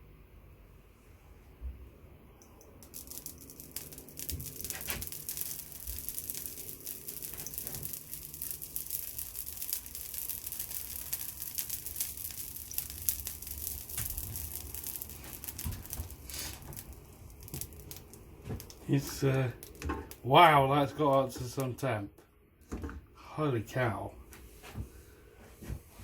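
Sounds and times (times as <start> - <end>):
fan heater hum: 0.0 - 26.0
dense crackling and sizzling: 2.5 - 21.8.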